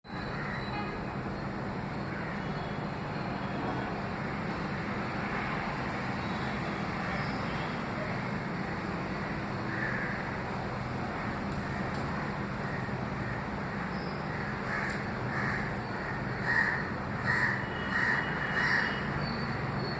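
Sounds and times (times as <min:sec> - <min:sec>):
road traffic noise: 0:00.0 - 0:19.9
crow cawing faintly: 0:09.2 - 0:10.5, 0:11.2 - 0:19.1.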